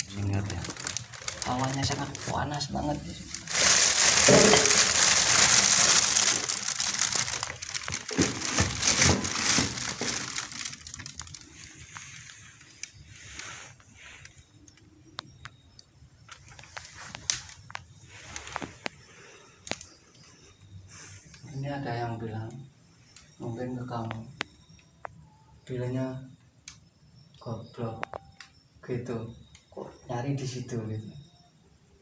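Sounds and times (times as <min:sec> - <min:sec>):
material rustling and crinkling: 0:00.0 - 0:14.4
scattered clicks: 0:26.4 - 0:28.6.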